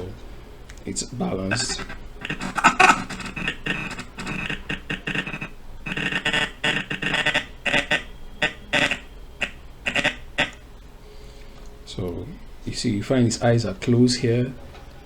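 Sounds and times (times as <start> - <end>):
stuttering voice fragments: 1.1 - 10.6.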